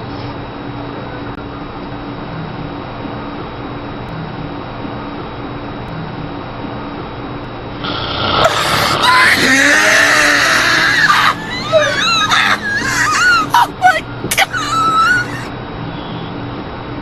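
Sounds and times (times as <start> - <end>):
person screaming and wailing: 8.4 - 15.5.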